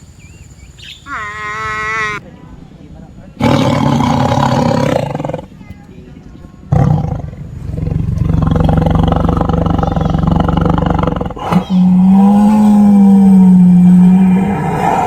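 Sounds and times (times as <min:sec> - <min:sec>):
cow mooing: 0:01.1 - 0:02.2, 0:06.7 - 0:14.5.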